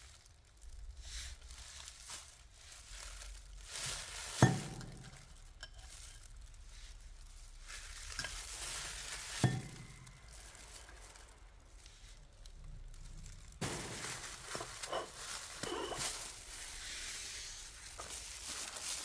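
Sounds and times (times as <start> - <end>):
metal tools rustling and clinking: 3.0 - 6.6, 7.6 - 11.2, 13.6 - 16.9.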